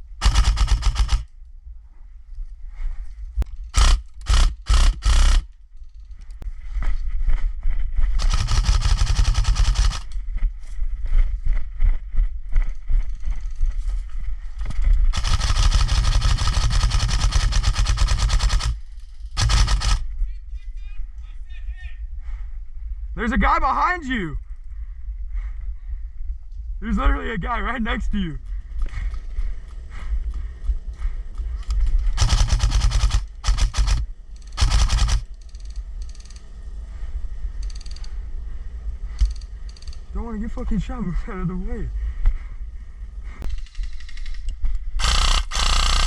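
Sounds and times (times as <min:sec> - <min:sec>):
airsoft gun full-auto burst: 0:00.0 - 0:01.3, 0:03.7 - 0:05.5, 0:08.2 - 0:10.1, 0:15.1 - 0:20.1, 0:32.2 - 0:35.3, 0:45.0 - 0:46.0.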